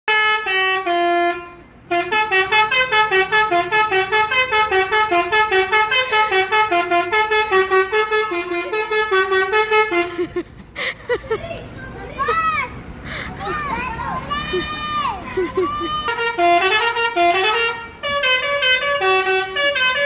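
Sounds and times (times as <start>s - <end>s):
bus musical horn playing a tune: 0.1s - 10.4s, 15.7s - 20.0s.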